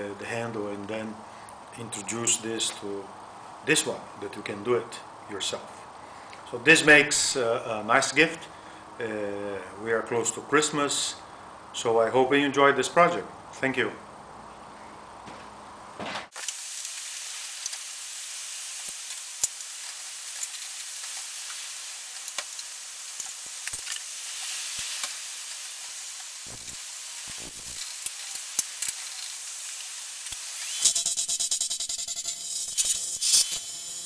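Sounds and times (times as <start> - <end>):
clicks and crackles: 17.6 - 17.9, 18.8 - 30.4.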